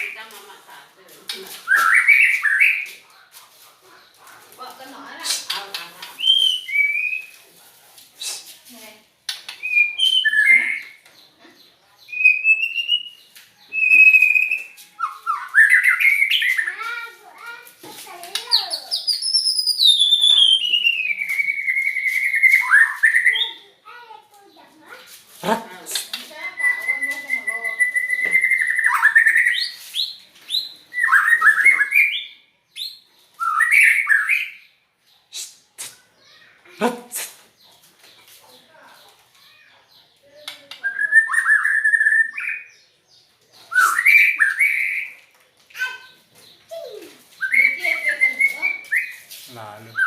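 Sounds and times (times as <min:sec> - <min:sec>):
bird singing whistled notes: 0:06.2 - 0:07.4, 0:09.6 - 0:11.0, 0:12.1 - 0:16.7, 0:18.9 - 0:23.6, 0:26.3 - 0:34.7, 0:40.8 - 0:45.2, 0:45.8 - 0:49.3.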